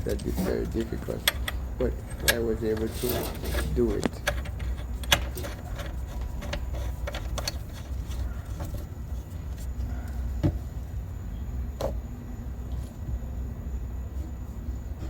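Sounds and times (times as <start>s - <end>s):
tools and fittings clicking and knocking: 0.0s - 8.9s
steady low rumble: 0.0s - 15.0s.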